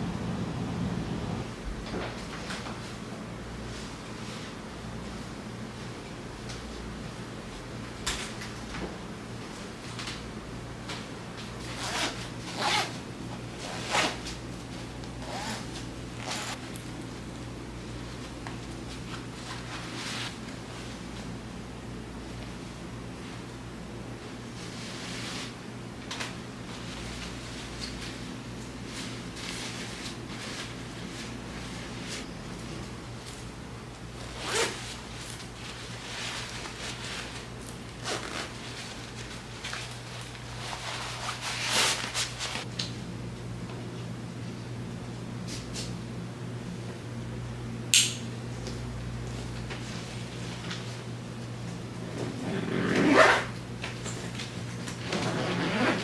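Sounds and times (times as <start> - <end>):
low steady hum: 0.0 - 25.0
clothing fabric rustling: 11.4 - 16.6, 18.9 - 21.2, 24.6 - 32.3, 34.2 - 42.7, 52.1 - 53.5, 54.2 - 56.0
bag zipper being pulled: 11.8 - 12.9, 13.6 - 14.2, 15.2 - 16.6, 34.4 - 34.8, 52.2 - 53.5, 55.0 - 56.0.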